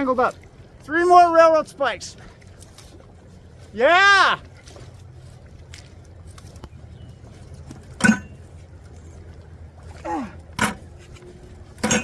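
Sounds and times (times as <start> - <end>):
steady low rumble: 4.4 - 11.8
metal clanks: 8.0 - 8.4, 11.8 - 12.0.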